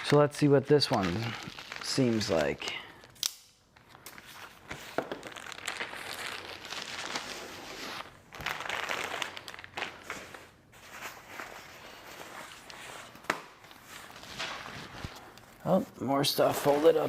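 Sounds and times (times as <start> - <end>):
jacket packaging rustling: 0.0 - 17.0.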